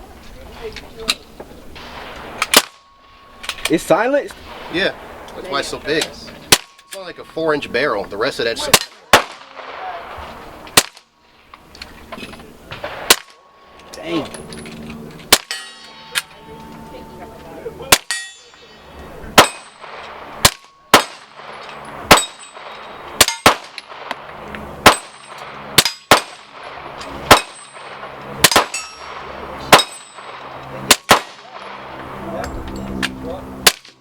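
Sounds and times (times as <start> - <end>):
suppressed pistol shots: 1.8 - 2.9, 6.5 - 6.9, 8.7 - 10.0, 12.7 - 13.4, 19.4 - 31.8.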